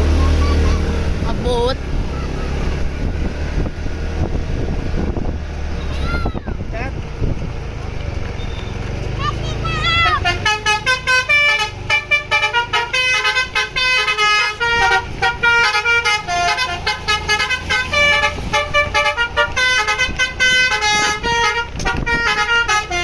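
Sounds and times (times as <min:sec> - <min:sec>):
bus engine running low: 0:00.0 - 0:23.0
multi-tone bus horn melody: 0:09.5 - 0:23.0.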